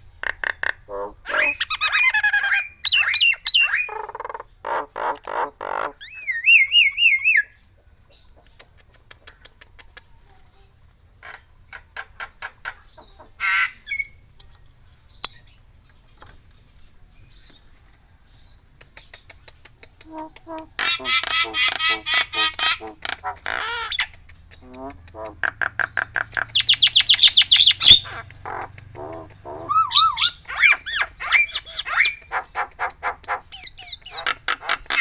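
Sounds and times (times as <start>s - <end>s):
bird squawking harshly: 0.2s - 7.4s, 20.0s - 35.0s
bird whistling like a siren: 6.1s - 7.6s, 29.7s - 32.1s
bird clicks and chatter: 8.4s - 10.2s, 14.3s - 17.7s, 18.7s - 35.0s.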